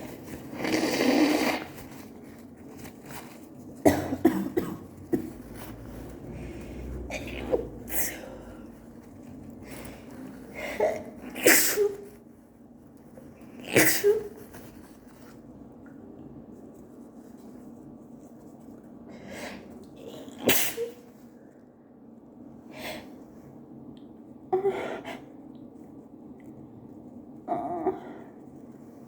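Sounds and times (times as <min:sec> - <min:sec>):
woman sneezing: 0:10.7 - 0:12.1, 0:13.6 - 0:14.4, 0:20.2 - 0:21.1.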